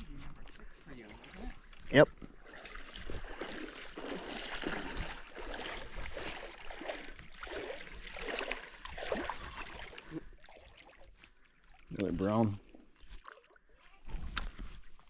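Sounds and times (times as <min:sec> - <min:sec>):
water splashing around kayak: 0:00.0 - 0:15.0.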